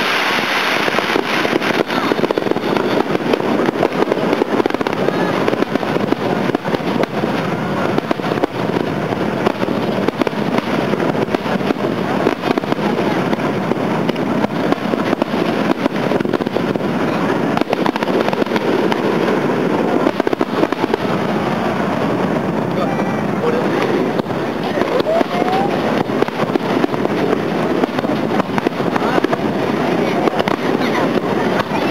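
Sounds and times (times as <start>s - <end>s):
fireworks bangs and crackles: 0.0s - 31.9s.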